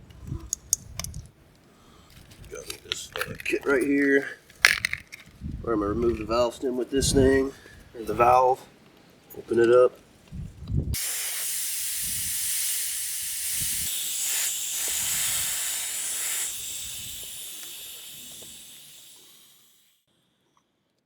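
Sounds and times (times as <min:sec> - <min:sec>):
air hissing out of a tire: 0:11.0 - 0:20.1.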